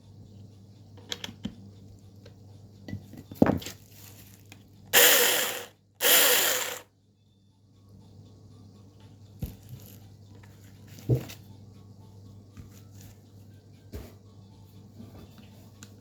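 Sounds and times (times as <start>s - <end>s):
battery chainsaw running: 5.0s - 6.8s.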